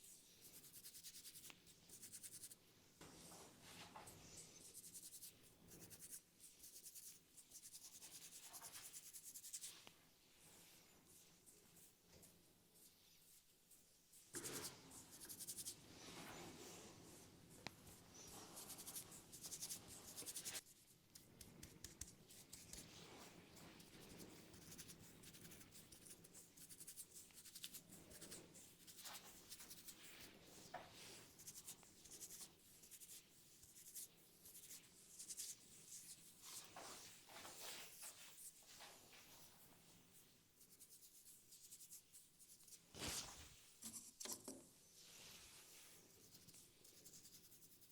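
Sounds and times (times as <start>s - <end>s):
fingers scratching through hair: 0.5s - 2.6s, 4.6s - 9.7s, 14.3s - 15.8s, 18.2s - 30.3s, 31.0s - 38.6s, 46.2s - 47.9s.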